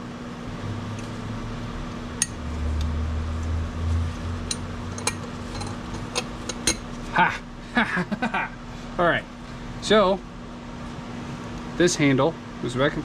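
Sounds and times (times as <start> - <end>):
small metal parts clinking: 4.5 - 6.8.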